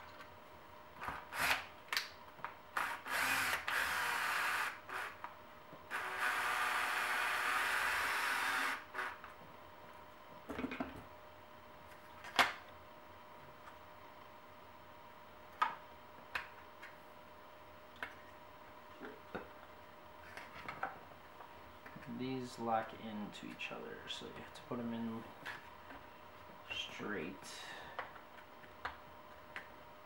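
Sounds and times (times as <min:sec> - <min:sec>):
drill driving screws into plastic: 0:01.0 - 0:01.7, 0:02.8 - 0:05.2, 0:05.9 - 0:09.2.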